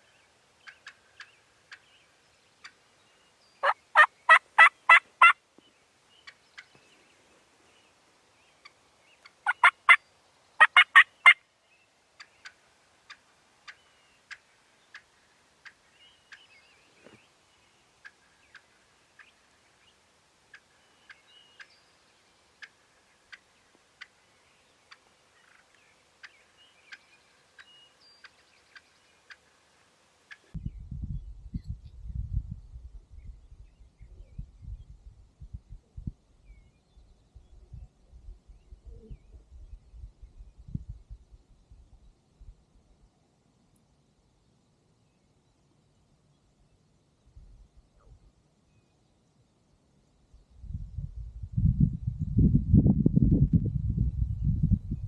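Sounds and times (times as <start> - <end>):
faint chirps and ticks: 0.0 - 30.6
turkey yelps: 3.6 - 5.4, 9.4 - 10.0, 10.6 - 11.4.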